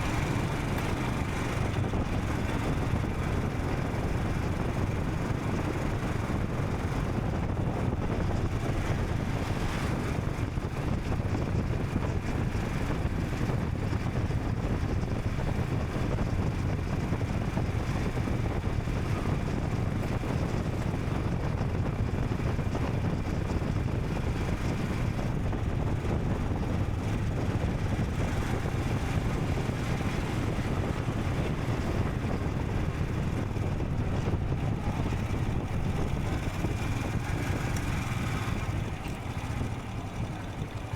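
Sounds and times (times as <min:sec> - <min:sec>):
motorcycle engine running: 0:00.0 - 0:40.9
wind rushing over microphone: 0:00.0 - 0:40.9.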